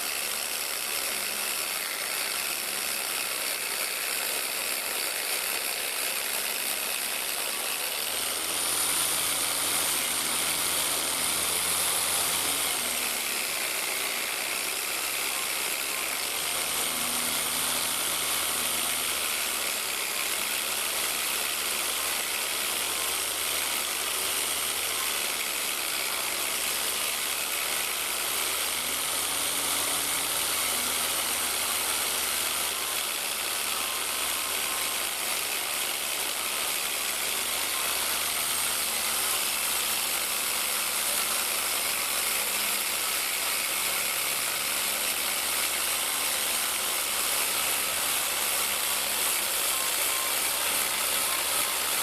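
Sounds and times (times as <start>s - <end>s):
power tool whining on metal: 0.0s - 52.0s.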